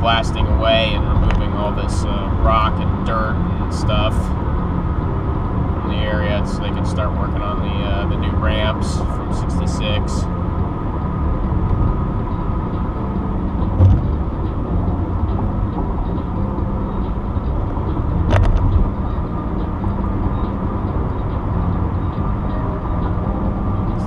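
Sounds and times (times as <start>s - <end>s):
car road and engine noise: 0.0s - 24.0s
brief knocks: 13.8s - 14.2s.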